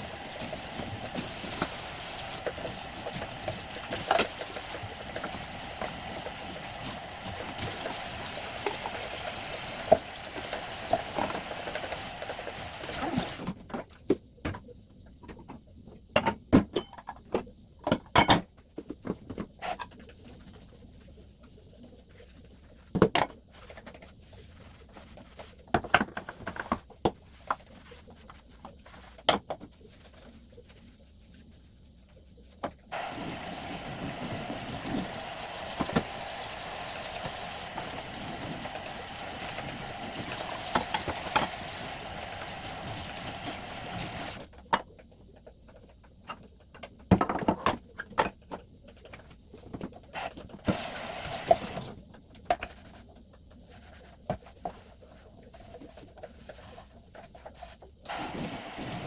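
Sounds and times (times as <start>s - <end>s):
water running from a tap: 0.0s - 13.5s, 32.9s - 44.5s, 50.6s - 51.9s, 58.1s - 59.0s
items knocking and clattering: 13.2s - 20.0s, 25.7s - 27.6s, 44.0s - 50.9s.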